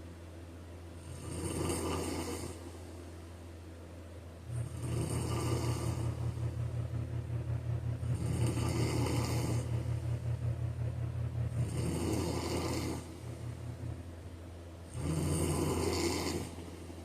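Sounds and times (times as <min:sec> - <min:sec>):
steady low hum: 0:00.0 - 0:17.0
man snoring: 0:01.0 - 0:02.6, 0:04.5 - 0:06.3, 0:08.1 - 0:09.8, 0:11.5 - 0:13.5, 0:14.9 - 0:16.9.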